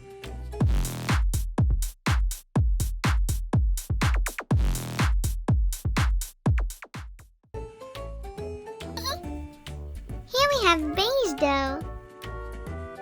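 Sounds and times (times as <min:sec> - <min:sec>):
drum machine kick drum hits: 0:00.6 - 0:07.2.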